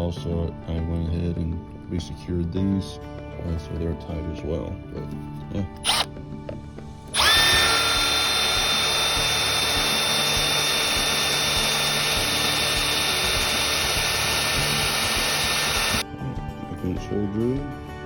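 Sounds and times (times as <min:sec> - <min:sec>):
power drill boring plastic: 0:05.8 - 0:06.1, 0:07.1 - 0:16.0.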